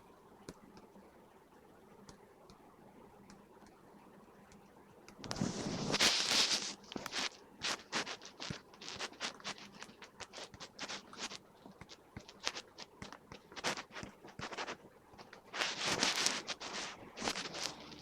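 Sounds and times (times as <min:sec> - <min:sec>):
scratching strokes: 0:05.3 - 0:18.0.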